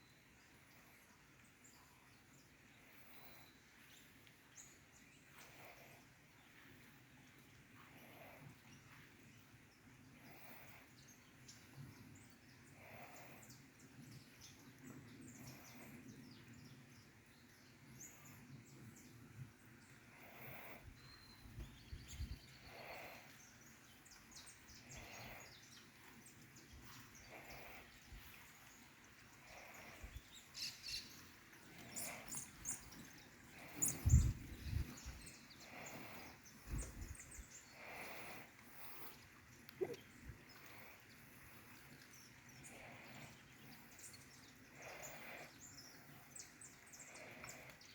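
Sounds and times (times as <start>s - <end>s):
wild birds chirping faintly: 0.0s - 47.9s.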